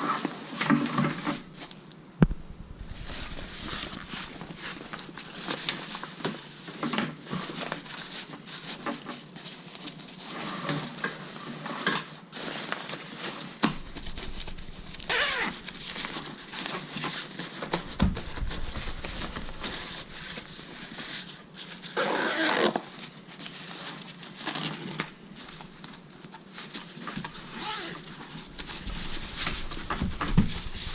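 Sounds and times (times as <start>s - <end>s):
fabric backpack rustling: 2.3s - 6.6s, 12.3s - 30.9s.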